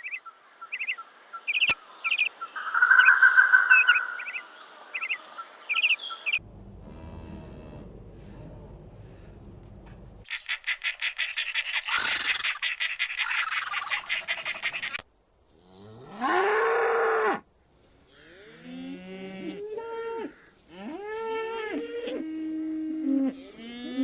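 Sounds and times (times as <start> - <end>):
rapid pulsing animal call: 5.8 - 15.0
cattle mooing: 6.4 - 10.2, 22.9 - 24.0.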